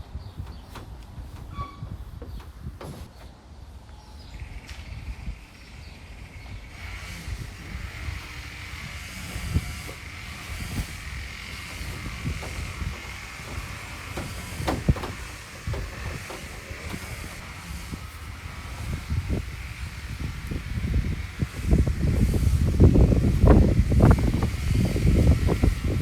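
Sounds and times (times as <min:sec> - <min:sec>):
light scrapes and knocks: 0:00.3 - 0:03.3, 0:08.8 - 0:18.9.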